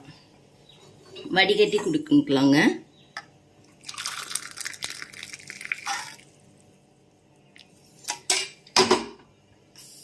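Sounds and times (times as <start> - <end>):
liquid pouring and splashing: 3.8 - 6.3.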